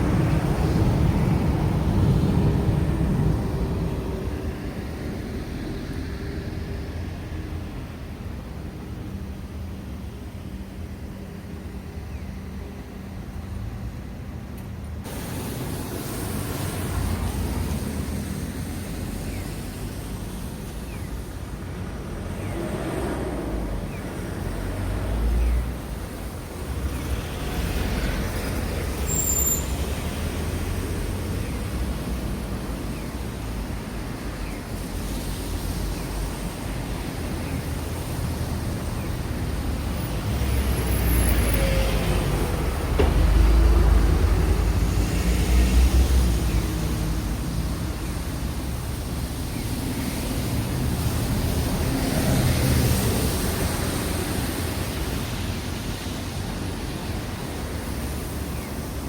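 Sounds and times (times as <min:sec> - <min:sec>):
road traffic rumble: 0:00.0 - 0:59.0.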